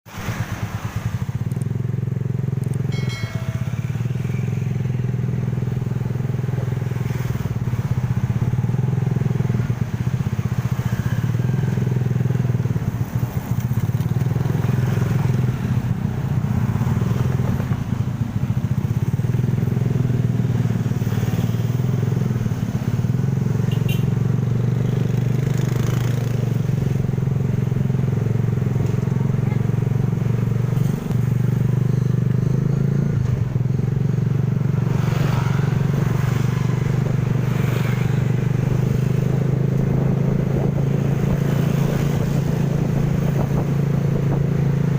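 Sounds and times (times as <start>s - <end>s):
road noise: 0.0s - 44.9s
motorcycle engine running: 0.4s - 44.9s
wind noise: 38.7s - 44.9s.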